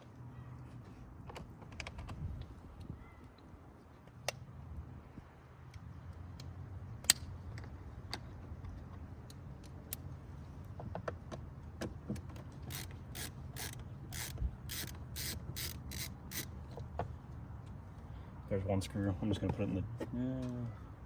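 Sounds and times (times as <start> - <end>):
screwdriver ratcheting clicks: 12.6 - 16.5.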